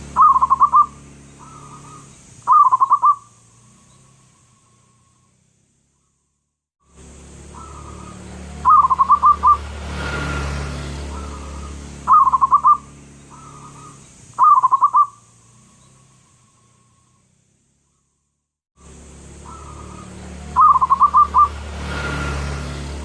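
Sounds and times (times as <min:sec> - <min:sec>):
dove cooing: 0:00.0 - 0:03.3, 0:07.5 - 0:09.7, 0:11.0 - 0:15.2, 0:19.4 - 0:21.6.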